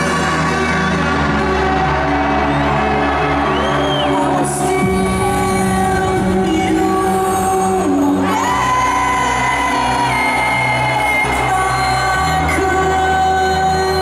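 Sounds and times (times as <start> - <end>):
sung vocal line: 3.8 - 14.0.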